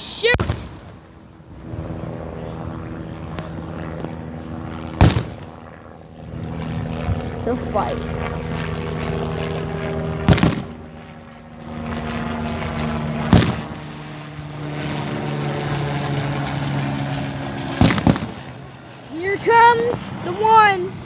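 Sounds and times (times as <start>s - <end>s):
low mechanical hum: 0.0s - 21.0s
firework bangs: 0.2s - 1.2s, 5.0s - 5.6s, 10.2s - 10.7s, 13.3s - 13.8s, 17.8s - 18.4s.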